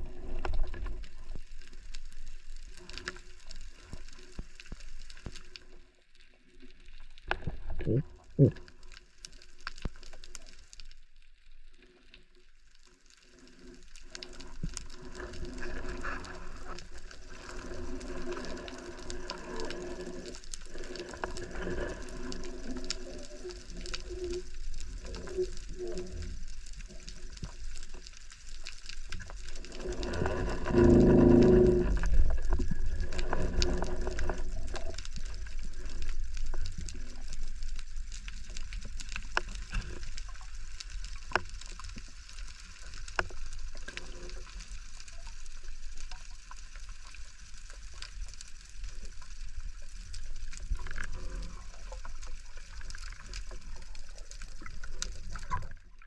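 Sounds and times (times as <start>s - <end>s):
murky underwater swell: 0.0s - 56.0s
muffled underwater rush: 28.8s - 45.9s.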